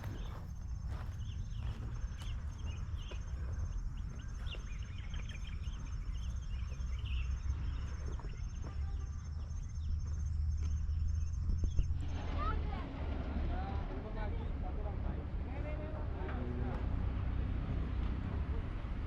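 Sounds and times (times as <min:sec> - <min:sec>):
birds chirping: 0:00.0 - 0:12.8
continuous low rumble: 0:00.0 - 0:19.0.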